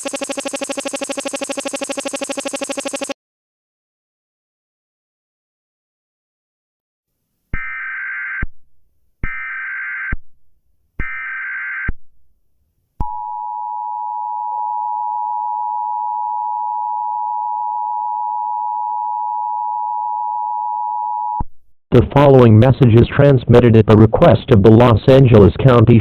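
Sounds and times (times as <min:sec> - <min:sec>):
buzzy digital data bursts: 0:00.0 - 0:03.2.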